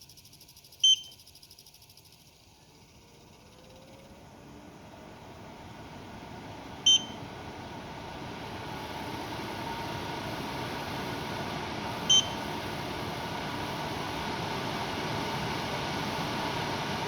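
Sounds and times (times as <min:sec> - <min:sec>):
fan rushing air and whine: 0:00.0 - 0:17.0
air purifier beeping: 0:00.8 - 0:01.2, 0:04.3 - 0:17.0.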